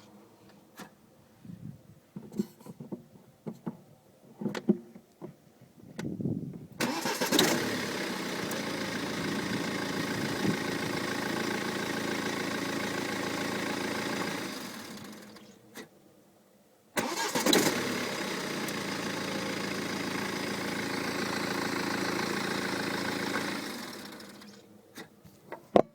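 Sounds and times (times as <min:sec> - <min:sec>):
engine flutter at shutdown: 0:06.8 - 0:15.5, 0:17.0 - 0:25.1
diesel engine starting and idling: 0:06.8 - 0:15.9, 0:17.0 - 0:25.2.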